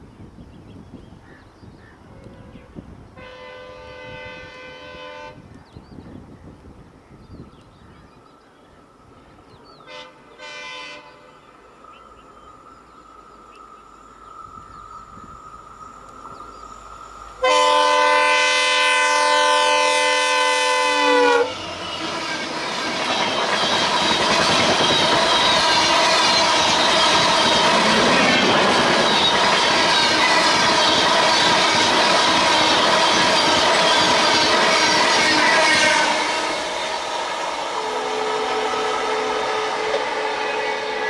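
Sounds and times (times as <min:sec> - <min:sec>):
train engine and wheels on rails: 0:00.0 - 0:41.0
locomotive air horn: 0:02.2 - 0:05.4, 0:09.9 - 0:11.2, 0:17.4 - 0:22.5, 0:34.3 - 0:37.0, 0:37.6 - 0:41.0.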